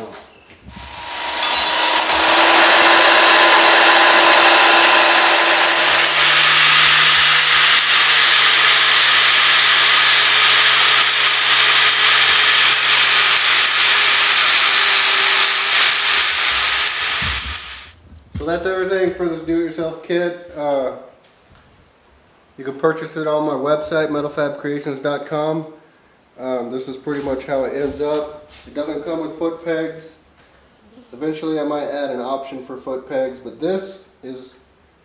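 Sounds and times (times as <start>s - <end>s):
power tool cutting sheet steel: 0.7s - 18.0s.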